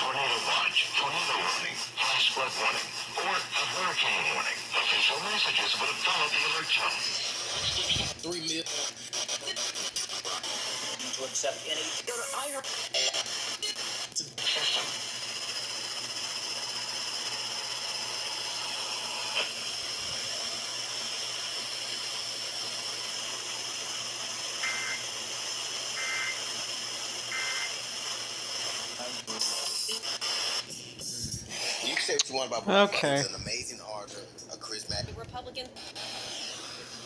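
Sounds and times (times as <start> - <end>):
radio static hiss: 0.0 - 37.0
two-tone data chirps: 24.6 - 25.2, 25.9 - 26.5, 27.3 - 27.8.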